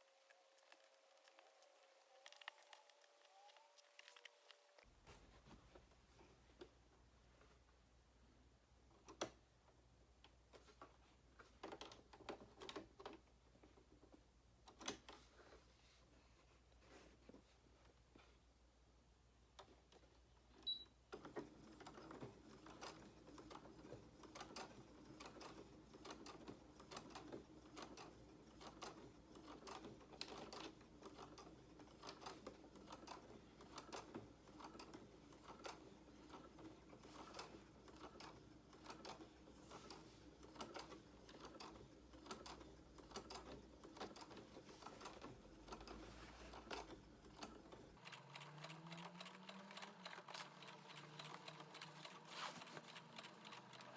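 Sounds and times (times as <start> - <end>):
sewing machine stitching: 20.6 - 53.9.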